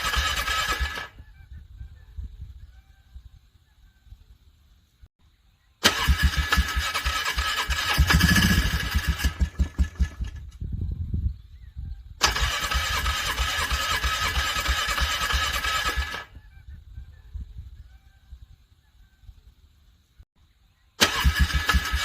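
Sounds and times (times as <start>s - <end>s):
starter cranking engine: 0.0s - 1.2s, 5.8s - 10.6s, 12.2s - 16.4s, 21.0s - 22.0s.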